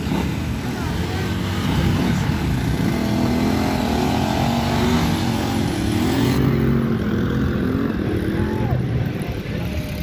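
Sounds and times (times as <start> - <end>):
motorcycle engine revving: 0.0 - 8.4.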